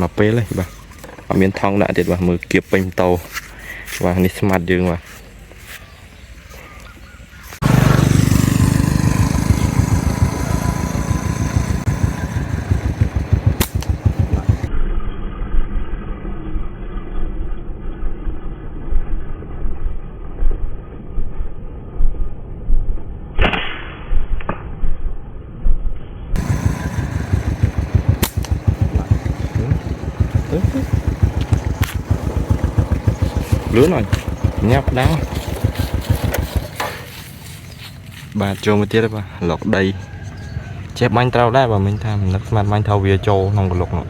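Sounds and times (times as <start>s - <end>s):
small motorcycle engine running: 7.6s - 14.7s, 26.4s - 37.9s
sharp crack: 12.4s - 14.7s, 23.4s - 24.8s, 26.4s - 30.4s.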